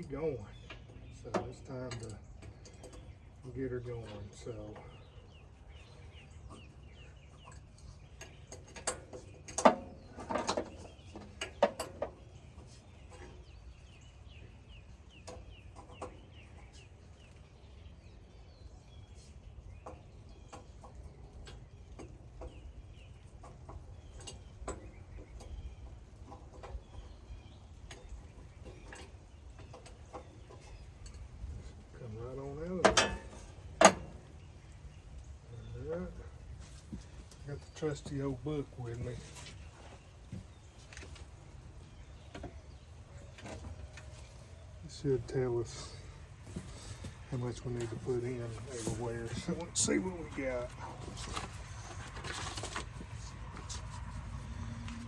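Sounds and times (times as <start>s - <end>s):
sharp knocks and clatters: 32.8s - 34.3s.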